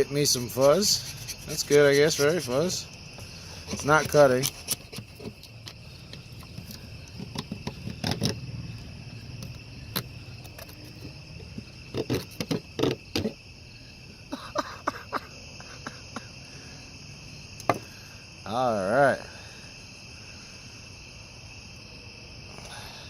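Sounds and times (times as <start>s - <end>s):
crickets chirping: 0.0s - 23.0s
multitool blade scraping and clicking: 3.6s - 6.8s.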